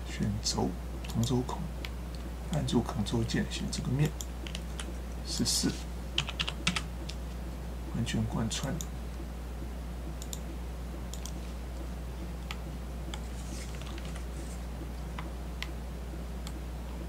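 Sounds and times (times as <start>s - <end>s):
low electrical hum: 0.0s - 17.0s
computer mouse clicks: 10.2s - 10.4s, 11.1s - 11.4s.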